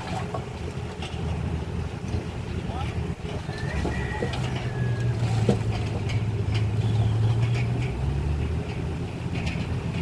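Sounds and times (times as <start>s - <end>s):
diesel engine of heavy machinery: 0.0s - 10.0s
light metal clanks: 2.0s - 10.0s.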